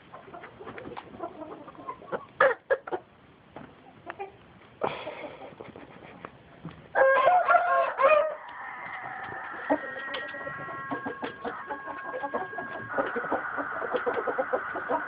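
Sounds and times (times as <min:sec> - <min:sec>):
chicken clucks: 0:00.0 - 0:15.0
rooster crowing: 0:07.0 - 0:15.0.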